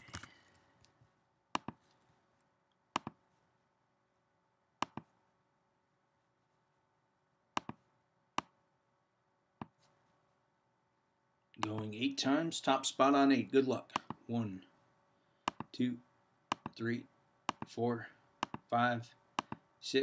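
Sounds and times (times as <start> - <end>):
computer mouse clicking: 1.6 - 1.8, 3.0 - 3.2, 4.8 - 5.1, 7.6 - 7.8, 15.5 - 15.7, 16.5 - 16.8, 17.5 - 17.7, 18.4 - 18.6, 19.4 - 19.6.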